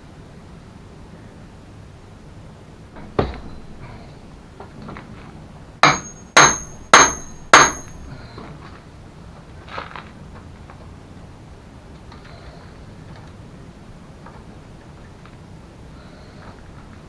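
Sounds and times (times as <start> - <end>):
hammer striking metal: 3.0 - 4.1, 5.8 - 8.1.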